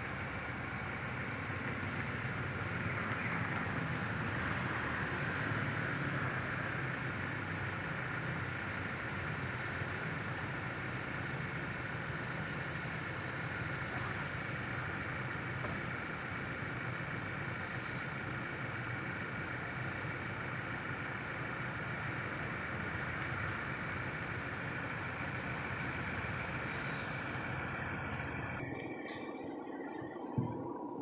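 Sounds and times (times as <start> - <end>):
low engine hum: 0.0 - 31.0
higher drone: 19.3 - 31.0.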